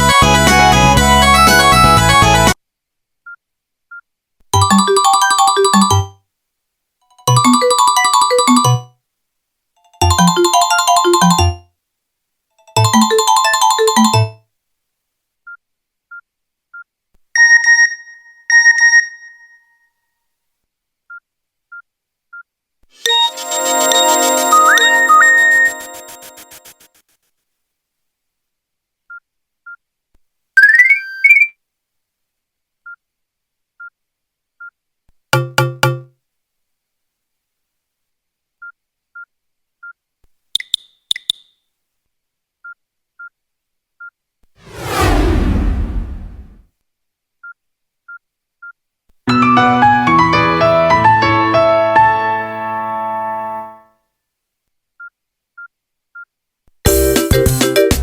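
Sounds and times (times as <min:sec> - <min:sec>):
phone ringtone fluttering rings: 0:04.6 - 0:06.1, 0:07.3 - 0:08.8, 0:12.6 - 0:14.3
loud swooshing: 0:44.6 - 0:46.6.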